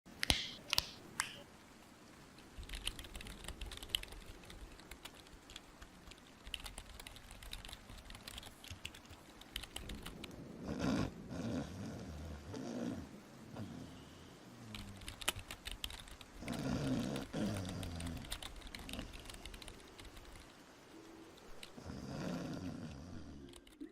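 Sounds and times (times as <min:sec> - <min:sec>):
computer keyboard typing: 0:02.6 - 0:10.3, 0:14.7 - 0:20.5, 0:23.4 - 0:23.9
low snore: 0:10.6 - 0:14.6, 0:16.4 - 0:18.2, 0:21.8 - 0:23.4.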